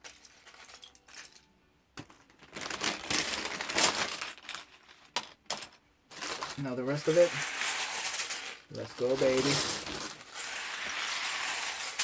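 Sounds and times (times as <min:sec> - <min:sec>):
plastic pieces tipped into bag: 0:02.0 - 0:12.0
plastic bag crinkling: 0:02.3 - 0:05.2, 0:06.1 - 0:12.0.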